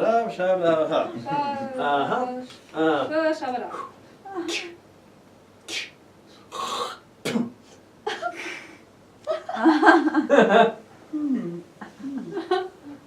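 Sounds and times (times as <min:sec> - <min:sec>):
person making breathy hisses: 0:05.7 - 0:07.0.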